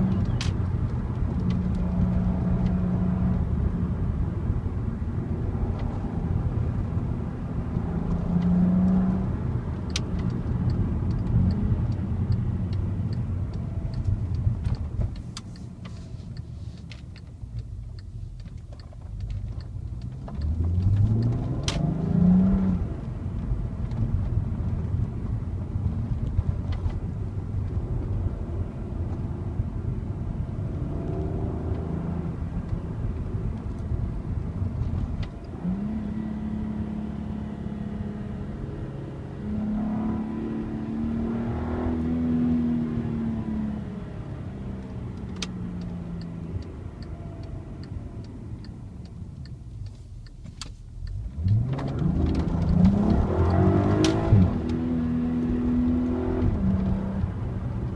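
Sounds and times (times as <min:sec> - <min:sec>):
car engine through exhaust: 0:00.0 - 0:57.9
light regular ticking: 0:09.6 - 0:21.8, 0:44.7 - 0:54.8.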